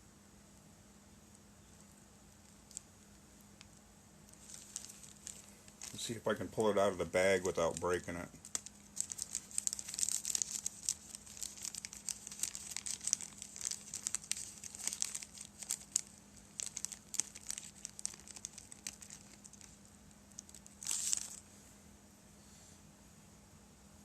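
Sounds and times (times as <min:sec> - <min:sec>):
plastic bag crinkling: 0:02.3 - 0:21.5.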